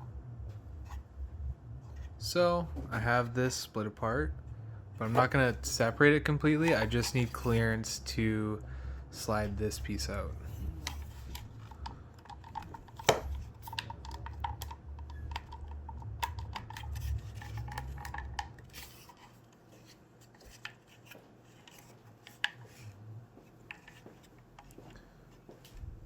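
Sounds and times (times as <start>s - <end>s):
plastic parts clicking and rattling: 10.5s - 22.9s.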